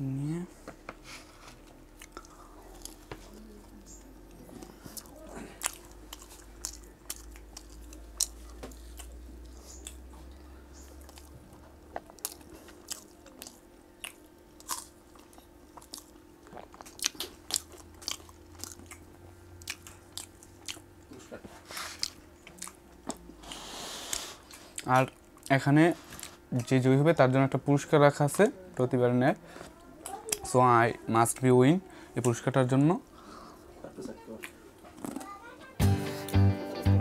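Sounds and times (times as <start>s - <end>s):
crunching fried pastry: 4.6s - 20.8s.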